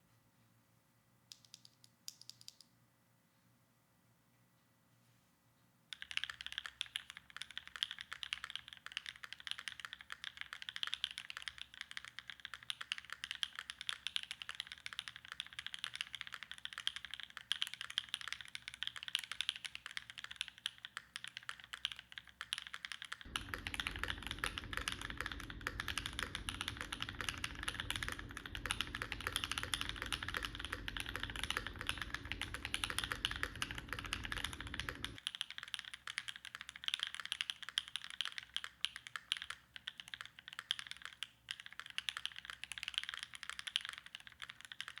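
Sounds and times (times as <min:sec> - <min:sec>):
fast mechanical keyboard typing: 0:01.3 - 0:02.6, 0:05.9 - 0:45.0
low rumble: 0:23.3 - 0:35.2.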